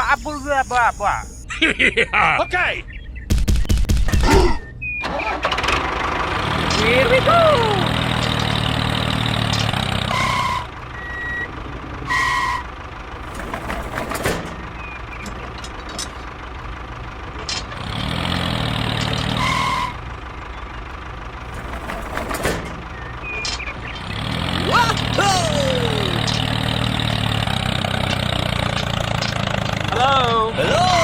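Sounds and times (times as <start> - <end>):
two-note electronic beeps: 0.0 - 1.5
tractor engine running: 3.1 - 31.0.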